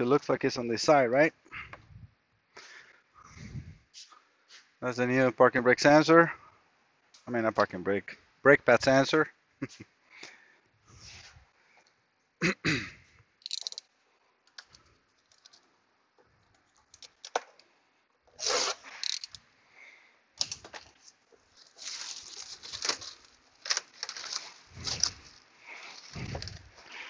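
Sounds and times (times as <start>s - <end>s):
packaging rustling and crinkling: 20.4s - 27.0s.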